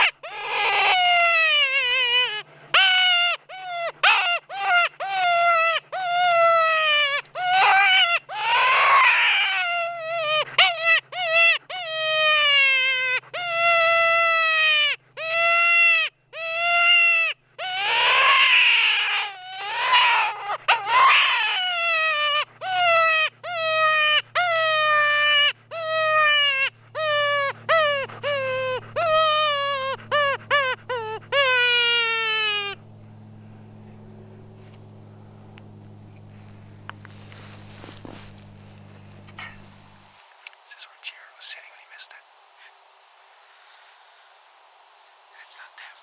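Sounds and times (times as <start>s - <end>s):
wailing distress cries: 0.0s - 32.8s.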